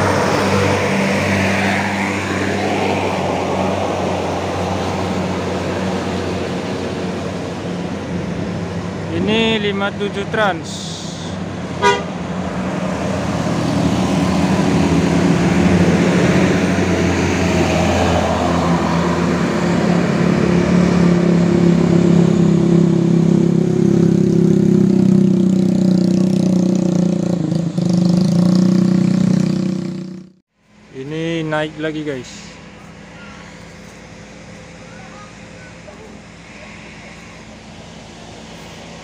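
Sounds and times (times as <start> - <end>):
bus diesel engine driving past: 0.0 - 39.0.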